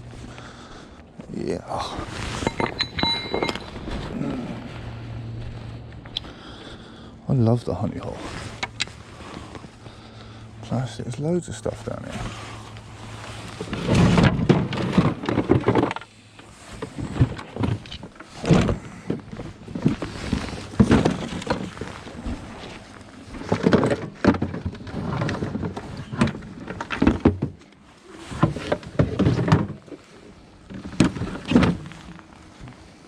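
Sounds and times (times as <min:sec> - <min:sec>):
scrap clattering and thudding: 0:02.0 - 0:04.1, 0:11.8 - 0:32.9.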